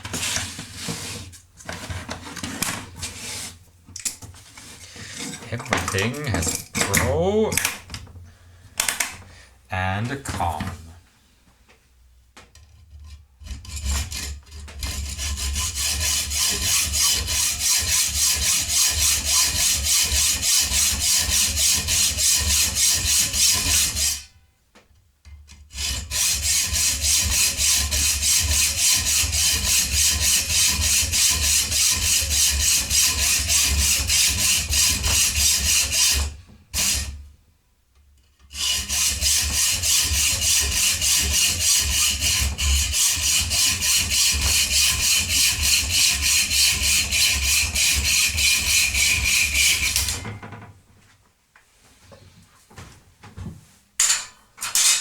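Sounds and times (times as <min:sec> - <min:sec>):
hacksaw cutting metal rod: 0:05.2 - 0:07.8, 0:12.6 - 0:24.3, 0:25.7 - 0:37.2, 0:38.5 - 0:50.4, 0:54.0 - 0:55.0.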